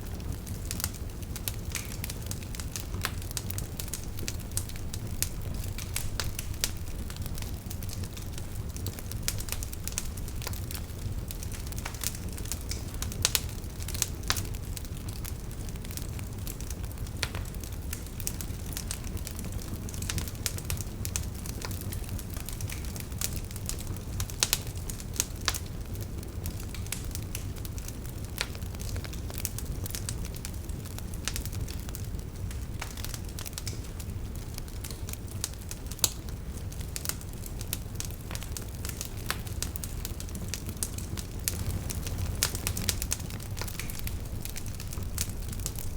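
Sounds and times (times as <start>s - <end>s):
wood fire crackling and popping: 0.0s - 45.9s
low rumble: 41.5s - 45.9s.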